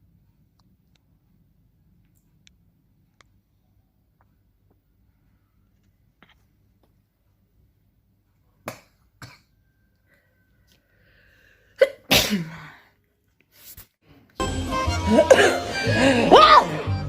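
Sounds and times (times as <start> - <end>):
breath sounds: 10.1 - 11.8
woman sneezing: 11.8 - 12.8.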